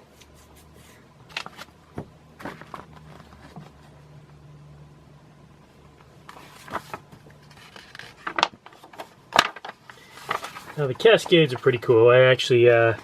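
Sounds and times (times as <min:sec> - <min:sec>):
low steady hum: 0:00.0 - 0:13.0
paper pages rustling: 0:02.4 - 0:04.0, 0:06.2 - 0:11.9.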